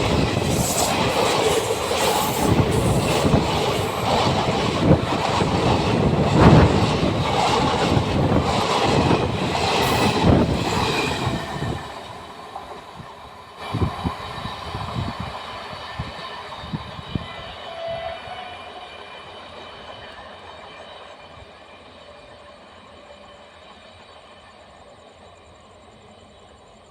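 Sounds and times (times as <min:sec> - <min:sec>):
train passing at speed: 0:00.0 - 0:26.9.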